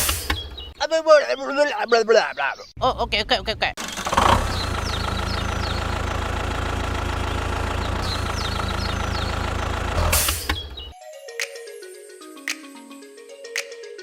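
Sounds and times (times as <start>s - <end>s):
tractor engine idling: 3.8s - 10.3s.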